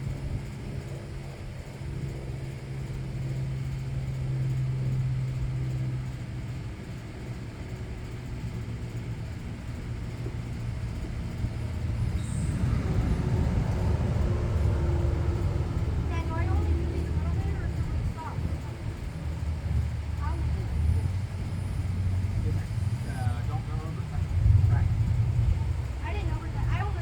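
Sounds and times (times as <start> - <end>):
engine rumble: 0.0 - 27.0.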